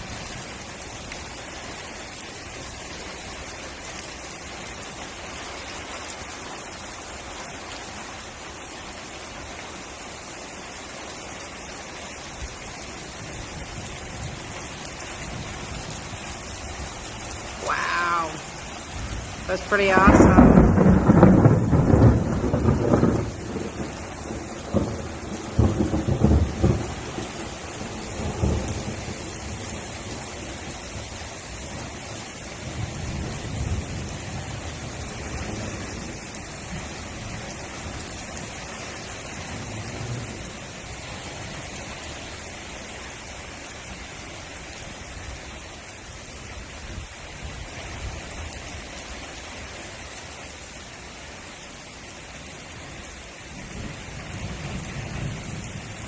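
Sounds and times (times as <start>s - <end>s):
steady rain: 0.0s - 56.0s
thunder rumbling: 17.6s - 29.8s.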